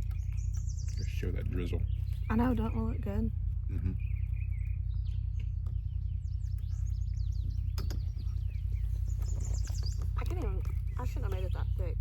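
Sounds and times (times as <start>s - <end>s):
small birds chirping: 0.0s - 12.0s
steady low rumble: 0.0s - 12.0s
sharp clicks: 7.6s - 8.2s.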